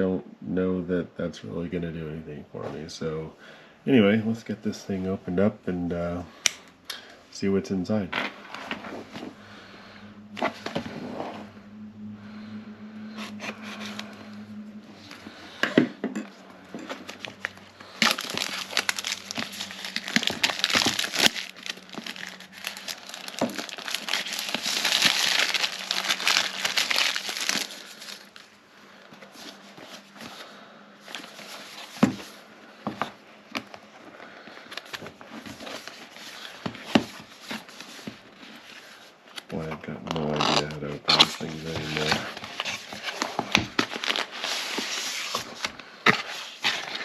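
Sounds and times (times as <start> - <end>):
packaging crinkling and tearing: 16.9 - 28.5, 34.6 - 47.0.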